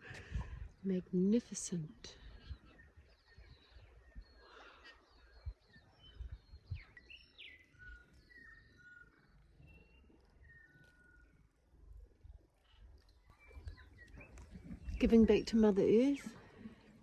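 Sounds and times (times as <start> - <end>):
wind rumble on microphone: 0.0 - 8.6, 9.6 - 17.0
birds chirping and whistling: 2.4 - 11.5, 12.6 - 15.6.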